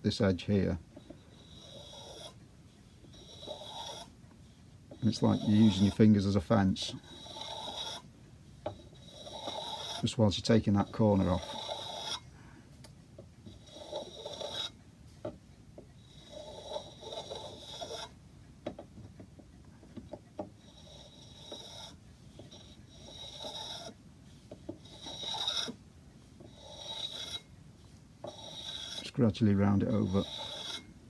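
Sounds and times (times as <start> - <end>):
hand plane shaving wood: 1.0 - 2.4, 3.1 - 4.1, 4.9 - 8.1, 8.7 - 12.2, 13.5 - 14.8, 16.0 - 18.2, 20.6 - 25.8, 26.4 - 27.5, 28.2 - 30.9.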